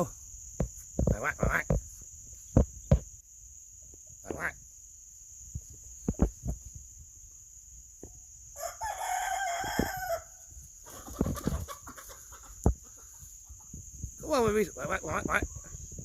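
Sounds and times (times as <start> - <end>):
insects buzzing: 0.0 - 16.0
rooster crowing: 8.6 - 10.6.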